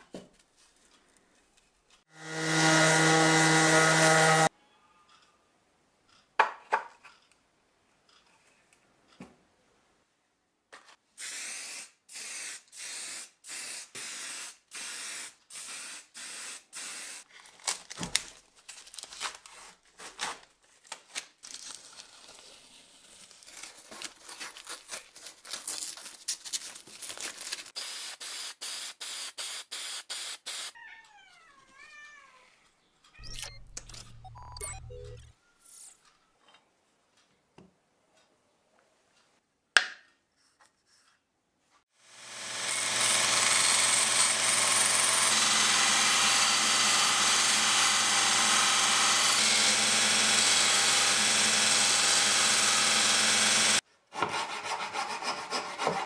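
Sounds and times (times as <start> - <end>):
spray hissing bursts: 11.2 - 17.2, 27.8 - 30.7.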